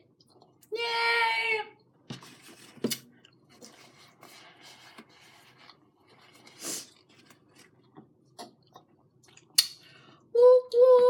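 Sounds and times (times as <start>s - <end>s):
rustles and clicks of eating: 2.2s - 9.6s.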